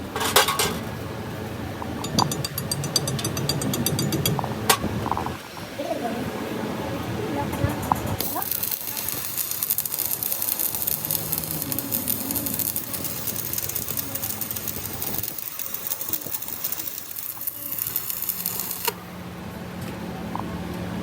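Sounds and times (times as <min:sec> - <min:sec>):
metal lathe cutting clatter: 0:08.2 - 0:19.0
steady machine hum: 0:08.2 - 0:20.2.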